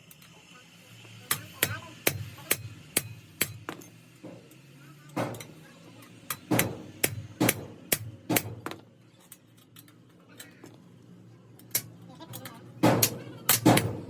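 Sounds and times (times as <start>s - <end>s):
hammer striking metal: 1.3s - 5.7s, 6.3s - 8.8s, 12.8s - 14.0s.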